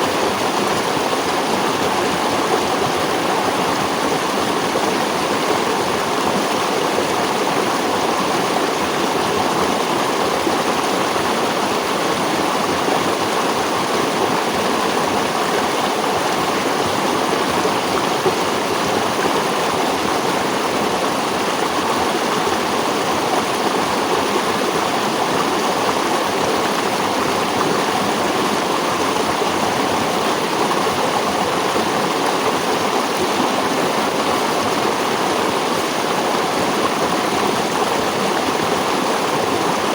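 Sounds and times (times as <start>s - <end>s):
water rushing: 0.0s - 39.9s.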